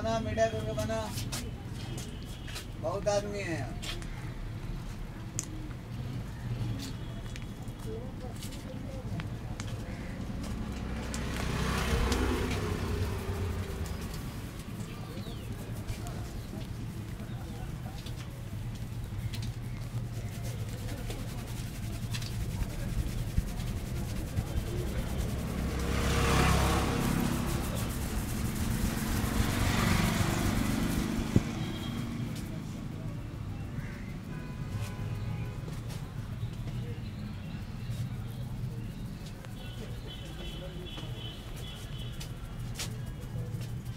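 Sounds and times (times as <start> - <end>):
low engine rumble: 7.8 - 43.9
vehicle passing by: 9.7 - 33.8.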